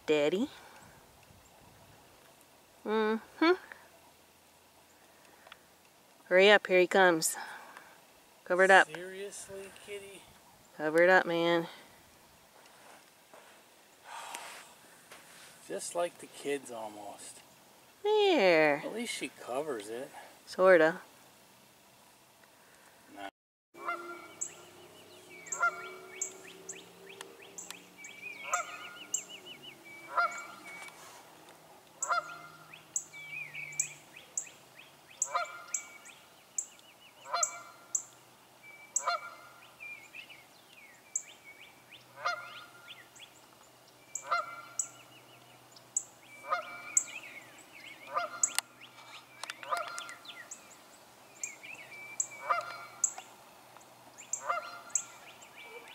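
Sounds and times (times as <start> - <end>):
small birds chirping and trilling: 23.2 - 31.2, 32.0 - 55.9
goose honking: 23.8 - 24.6, 25.4 - 26.8, 28.4 - 29.2, 30.0 - 30.8, 32.0 - 32.7, 35.2 - 35.9, 37.2 - 37.9, 39.0 - 39.6, 42.2 - 42.8, 44.2 - 44.8, 46.4 - 47.1, 48.1 - 48.6, 49.6 - 50.2, 52.4 - 53.1, 54.4 - 55.1.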